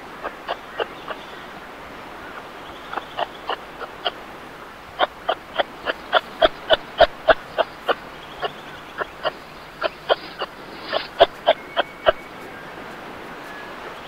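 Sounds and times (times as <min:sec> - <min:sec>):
kangaroo clucking calls: 0:00.0 - 0:14.0.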